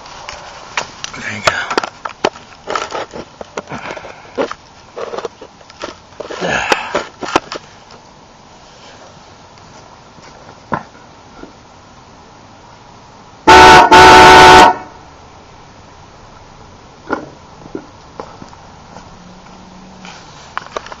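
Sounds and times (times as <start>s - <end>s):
loud truck horn honks: 13.5s - 15.0s.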